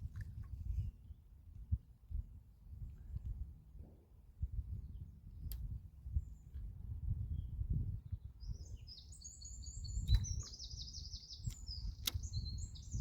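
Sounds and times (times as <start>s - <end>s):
steady low rumble: 0.0s - 9.0s
songbird twittering: 7.3s - 13.0s
sharp clicks: 11.4s - 12.3s.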